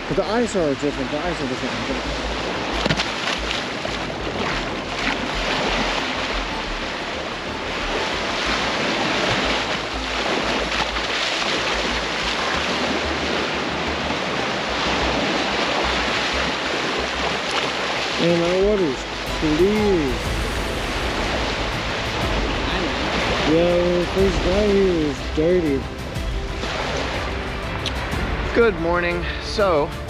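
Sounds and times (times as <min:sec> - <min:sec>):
surf washing onto sand: 0:00.0 - 0:30.0
wind rumbling on microphone: 0:19.0 - 0:30.0.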